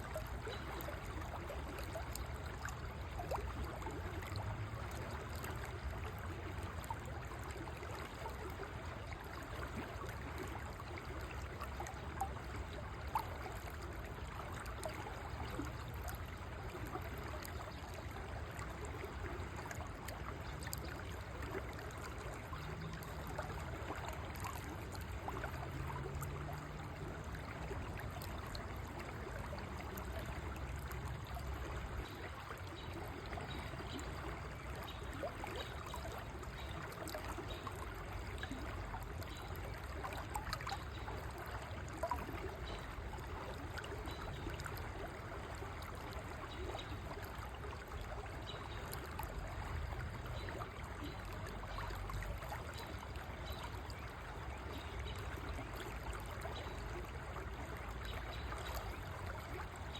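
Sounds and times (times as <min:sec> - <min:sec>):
river water flowing: 0:00.0 - 0:59.9.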